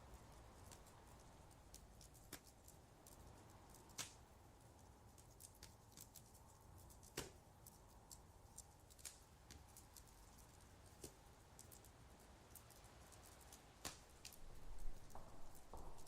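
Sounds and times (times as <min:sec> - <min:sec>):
small clicks and ticks: 0:00.1 - 0:16.0.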